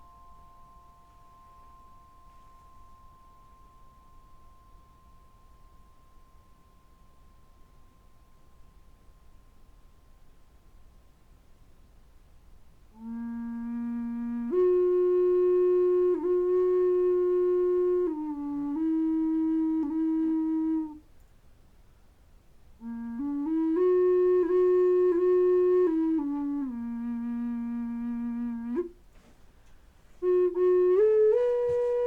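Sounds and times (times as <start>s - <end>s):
flute playing long notes: 12.9s - 21.1s, 22.8s - 29.3s, 30.1s - 32.0s.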